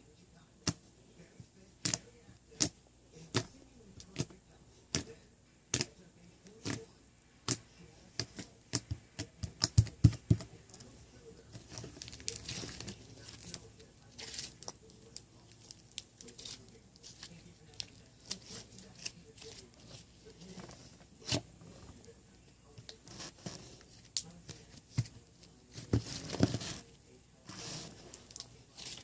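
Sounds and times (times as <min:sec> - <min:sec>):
soft crackling rustle: 0:10.7 - 0:29.0.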